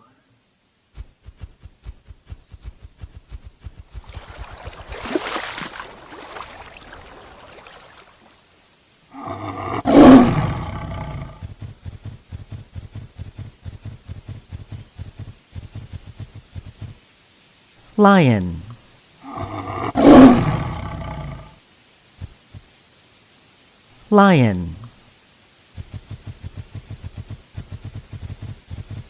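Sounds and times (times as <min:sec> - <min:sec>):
hippopotamus grunting: 0:09.1 - 0:11.7.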